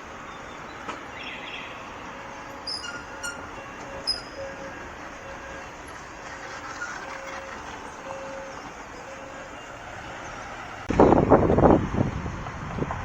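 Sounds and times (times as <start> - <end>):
street traffic noise: 0.0 - 13.0.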